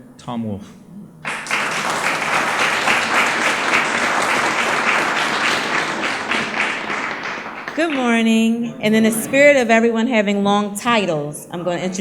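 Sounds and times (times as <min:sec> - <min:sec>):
audience applauding: 0:01.2 - 0:09.5.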